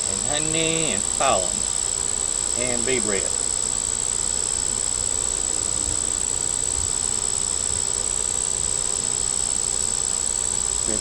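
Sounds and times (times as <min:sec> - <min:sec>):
high-pitched insect trill: 0:00.0 - 0:11.0
honey bees buzzing: 0:00.0 - 0:11.0.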